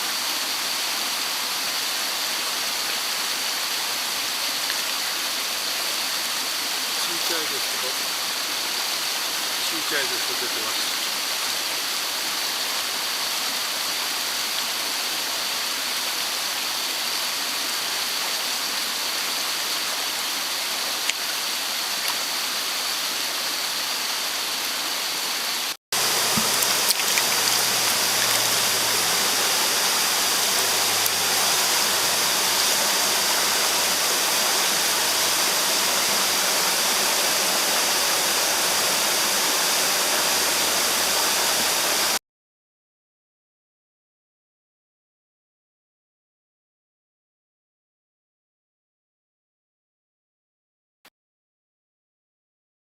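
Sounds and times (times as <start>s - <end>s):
stream rushing over rocks: 0.0s - 42.2s.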